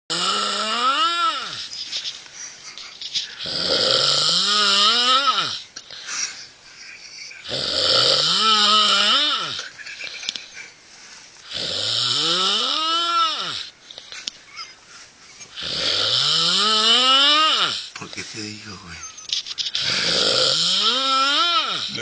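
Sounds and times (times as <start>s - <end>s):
loud snoring: 0.1s - 1.7s, 3.4s - 5.6s, 7.4s - 9.7s, 11.5s - 13.7s, 15.6s - 17.9s, 19.8s - 22.0s.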